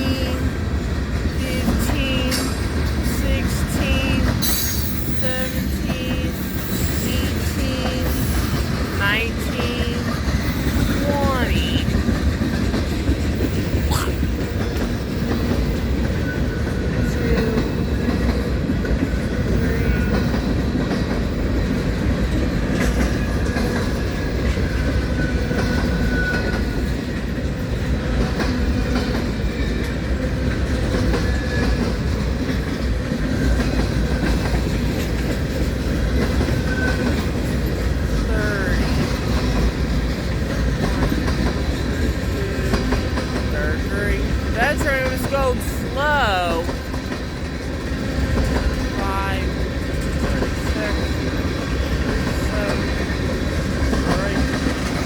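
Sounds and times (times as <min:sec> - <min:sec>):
freight train wheels rumbling: 0:00.0 - 0:55.0.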